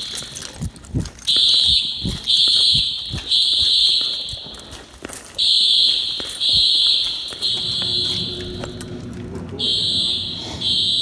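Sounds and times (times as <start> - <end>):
fire alarm horn blasts: 1.3 - 4.4, 5.4 - 9.0, 9.6 - 11.0.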